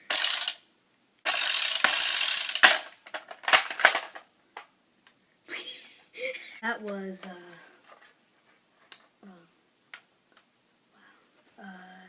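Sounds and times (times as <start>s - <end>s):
toy blaster ratcheting and clicking: 0.1s - 0.6s, 1.2s - 4.2s.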